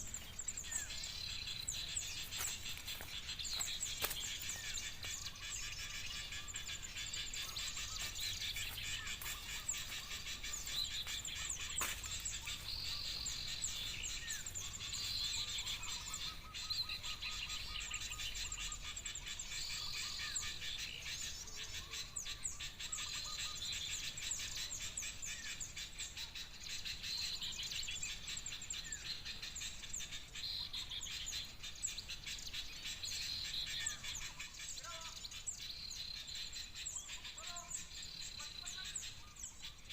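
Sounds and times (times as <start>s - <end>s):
small birds chattering: 0.0s - 39.9s
whistled bird phrases: 33.7s - 35.4s, 36.9s - 39.8s.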